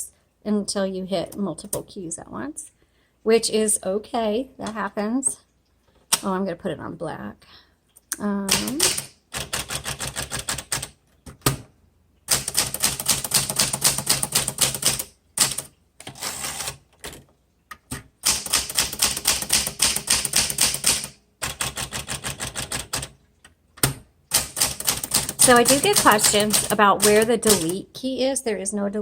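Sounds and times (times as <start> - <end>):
manual typewriter key strikes: 8.5 - 11.6, 12.3 - 15.7, 18.2 - 23.1, 23.8 - 27.8.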